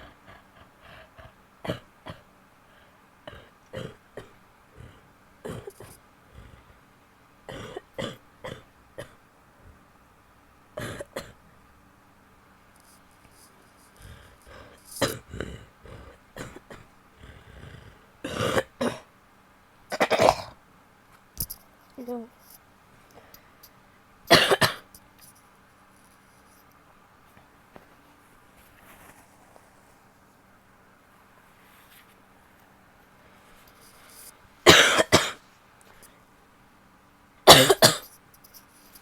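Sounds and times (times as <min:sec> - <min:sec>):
woman clearing throat: 0:00.0 - 0:02.3, 0:03.3 - 0:06.0, 0:07.5 - 0:09.2, 0:10.8 - 0:11.4, 0:14.6 - 0:16.9, 0:18.2 - 0:19.1, 0:19.9 - 0:20.6, 0:24.3 - 0:24.9, 0:34.7 - 0:35.4, 0:37.5 - 0:38.0
woman coughing: 0:10.8 - 0:11.4, 0:18.3 - 0:19.1, 0:19.9 - 0:20.5, 0:24.3 - 0:24.9, 0:34.7 - 0:35.4, 0:37.5 - 0:38.1.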